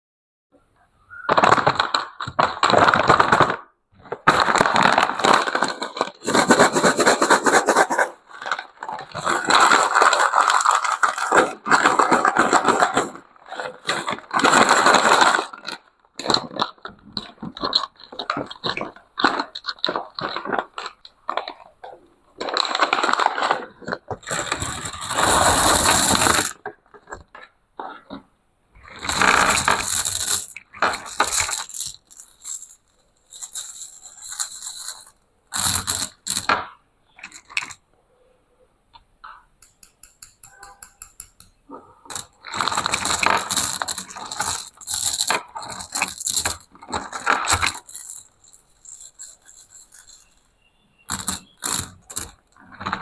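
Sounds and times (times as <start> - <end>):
candy crunching: 1.1 - 37.8, 39.6 - 53.0
scattered clicks: 39.3 - 46.6.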